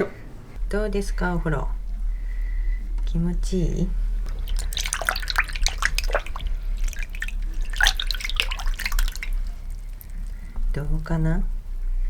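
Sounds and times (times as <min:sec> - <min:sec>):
water splashing and dripping: 0:03.9 - 0:10.5.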